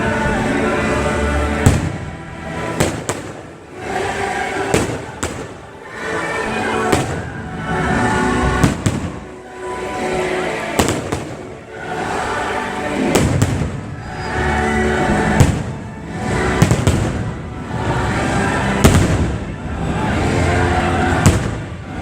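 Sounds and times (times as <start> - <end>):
loud show music: 0.0 - 22.0
fireworks bangs: 1.5 - 6.1, 6.7 - 7.5, 8.4 - 9.4, 10.8 - 11.6, 13.0 - 14.3, 15.0 - 17.4, 18.6 - 19.6, 21.0 - 22.0.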